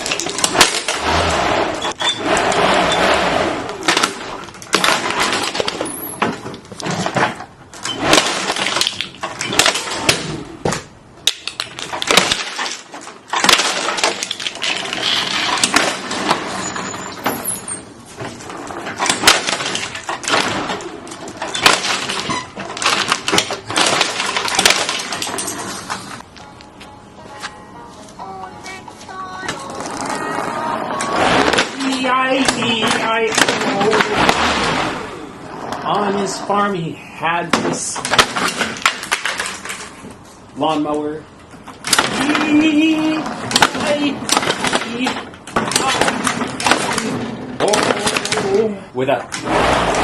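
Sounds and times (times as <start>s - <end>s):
plastic cracking and clattering: 0.0s - 1.0s, 3.8s - 16.6s, 18.2s - 26.2s, 31.0s - 34.4s, 37.5s - 40.2s, 41.6s - 48.7s
lawnmower engine: 0.0s - 28.2s, 29.6s - 50.0s.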